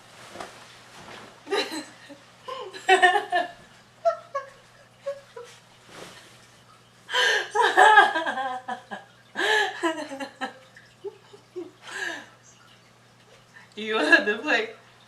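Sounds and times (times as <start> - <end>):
woman laughing loudly: 7.5 - 10.5
woman's voice: 13.8 - 14.8.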